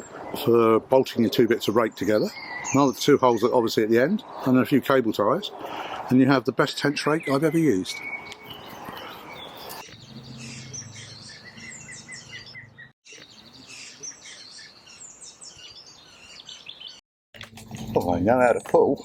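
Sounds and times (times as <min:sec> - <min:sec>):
small birds chirping: 0:00.0 - 0:04.5, 0:06.7 - 0:17.0.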